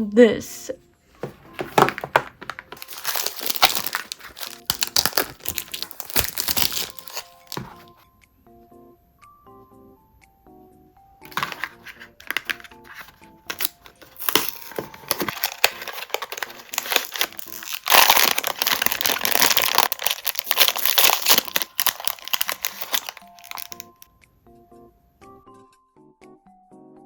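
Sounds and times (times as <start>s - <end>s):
soft background music: 0.0s - 27.0s
packaging wrapper crinkling: 1.2s - 8.0s, 11.2s - 24.0s.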